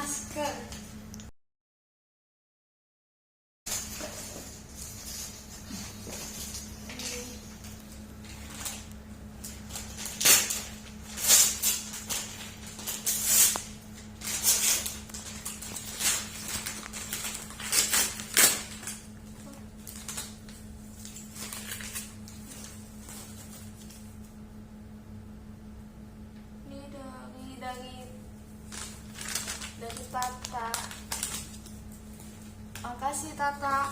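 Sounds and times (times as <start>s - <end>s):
gift wrapping crinkling and tearing: 3.7s - 24.1s, 28.7s - 32.9s.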